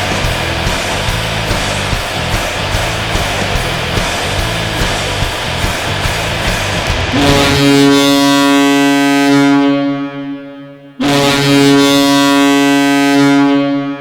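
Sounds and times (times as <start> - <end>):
deep air horn blasting: 7.1 - 14.0.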